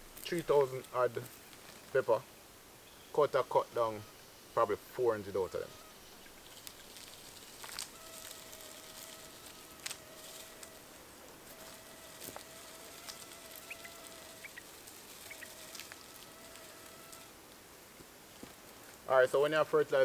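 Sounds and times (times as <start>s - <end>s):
thin steady hum: 3.7s - 17.6s.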